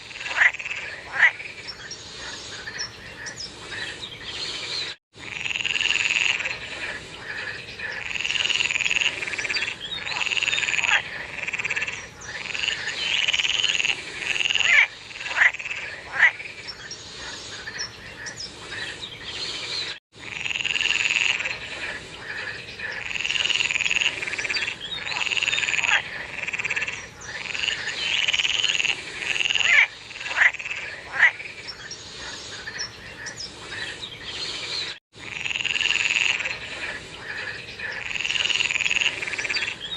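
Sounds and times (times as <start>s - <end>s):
short sharp frog calls: 0.0s - 1.6s, 5.2s - 16.5s, 20.2s - 31.5s, 35.2s - 39.8s
frogs calling in chorus: 0.0s - 3.9s, 5.2s - 18.9s, 20.2s - 34.6s, 35.2s - 39.9s.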